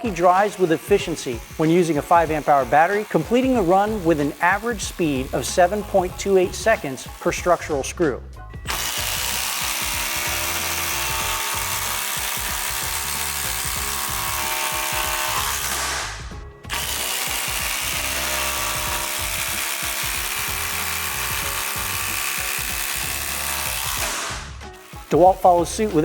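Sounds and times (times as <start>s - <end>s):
impact driver driving screws: 8.7s - 25.2s.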